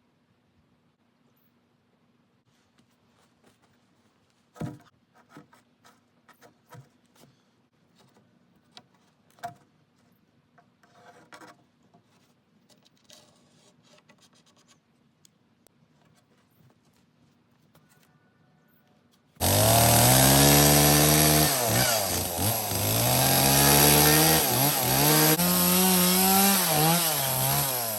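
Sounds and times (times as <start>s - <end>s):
scraping and rubbing: 4.4s - 14.9s.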